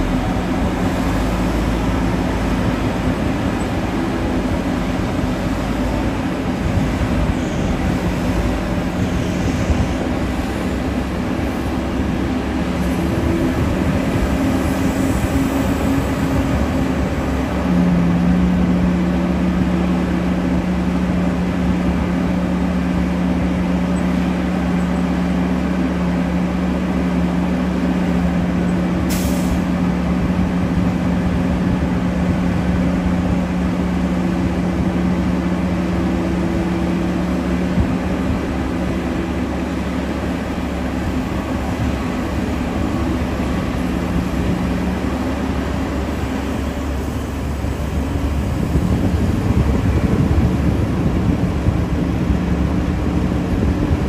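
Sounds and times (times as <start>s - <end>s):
diesel engines droning: 0.0s - 54.0s.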